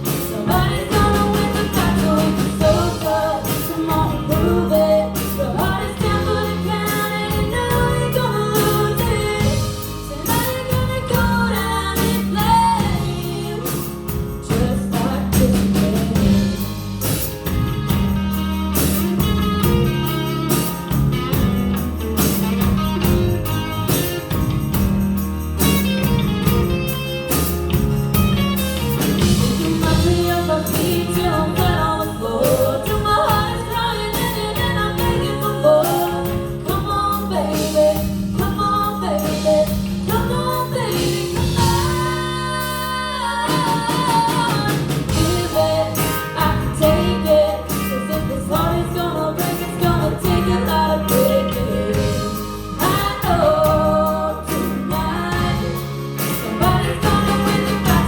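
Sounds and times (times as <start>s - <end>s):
woman singing: 0.0s - 16.8s, 29.2s - 58.0s
bass notes: 0.0s - 58.0s
guitar: 0.0s - 58.0s.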